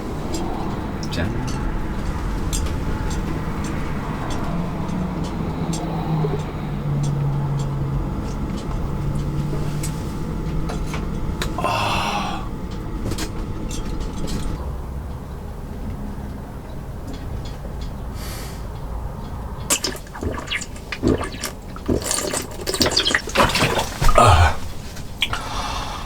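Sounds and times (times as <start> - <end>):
short hiss: 18.2 - 18.6.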